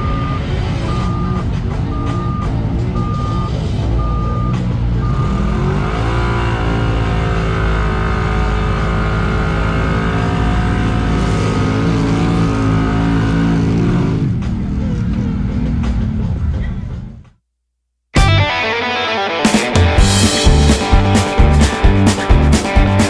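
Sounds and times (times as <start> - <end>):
backup alarm beeping: 0.0 - 5.4
engine revving: 0.0 - 16.6, 19.5 - 23.0.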